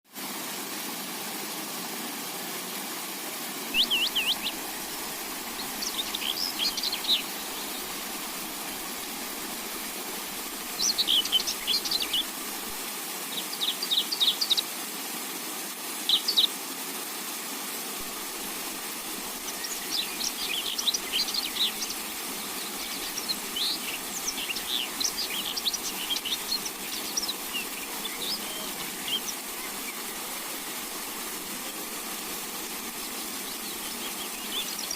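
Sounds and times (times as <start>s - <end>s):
steady hiss: 0.1s - 34.9s
songbird chirping and trilling: 3.8s - 8.8s, 10.6s - 12.3s, 19.4s - 30.2s, 33.0s - 34.9s.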